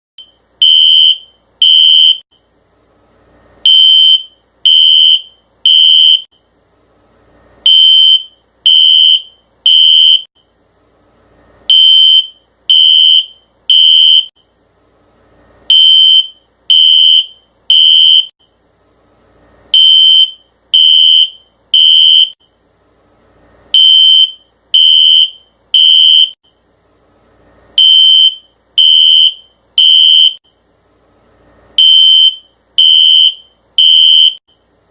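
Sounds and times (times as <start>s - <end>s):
fire alarm beeping: 0.2s - 2.3s, 3.7s - 6.3s, 7.7s - 10.3s, 11.7s - 14.4s, 15.7s - 18.3s, 19.8s - 22.4s, 23.8s - 26.4s, 27.8s - 30.4s, 31.8s - 34.5s.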